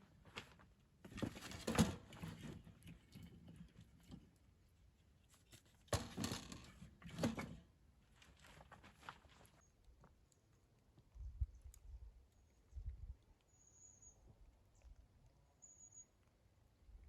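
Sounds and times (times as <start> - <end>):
crunching and rustling: 8.0 - 10.6.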